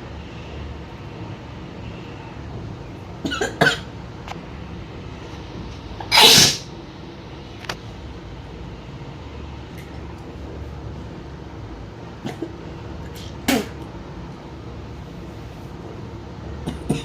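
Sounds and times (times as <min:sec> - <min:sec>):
person sneezing: 0:06.0 - 0:06.6.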